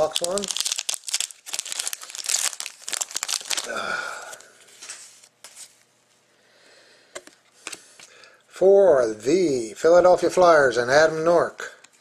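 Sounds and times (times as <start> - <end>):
card pack wrapper tearing and crinkling: 0.0 - 4.4.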